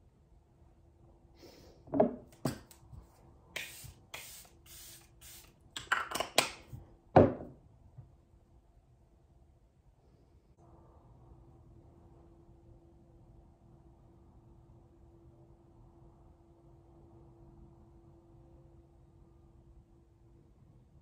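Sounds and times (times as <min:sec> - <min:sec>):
short hissing bursts: 0:03.6 - 0:05.6.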